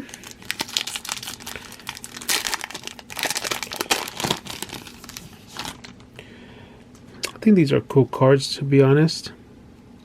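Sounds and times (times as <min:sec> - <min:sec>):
foil wrapper tearing and crinkling: 0:00.0 - 0:06.0.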